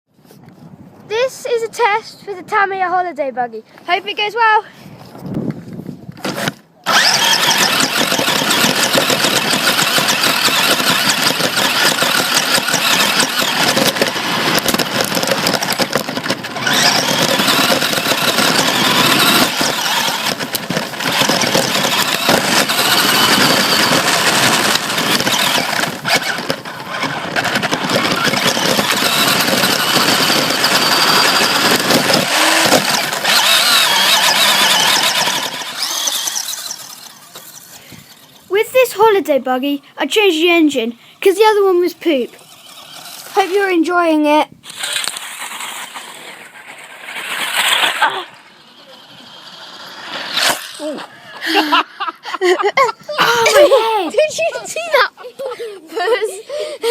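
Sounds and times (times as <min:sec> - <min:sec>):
electric motor and gears whining: 0:06.9 - 0:26.6, 0:27.5 - 0:38.4
tyre noise: 0:52.8 - 0:54.2.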